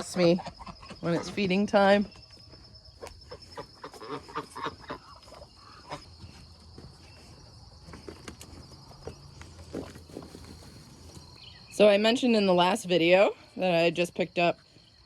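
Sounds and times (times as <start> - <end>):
crickets trilling: 0.0 - 15.0
rustles: 2.1 - 11.8.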